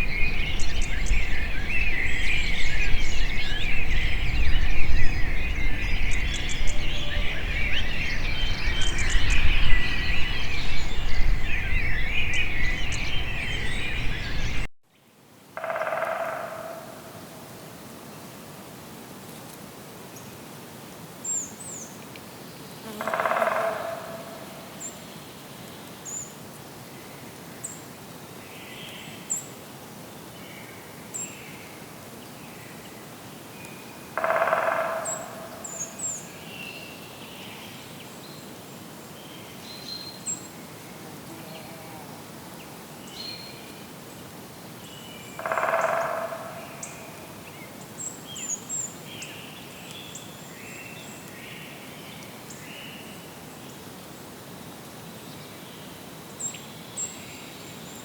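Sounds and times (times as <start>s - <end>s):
birds chirping and calling: 0.0s - 14.7s, 34.2s - 36.3s, 45.4s - 48.9s
background hiss: 0.0s - 58.0s.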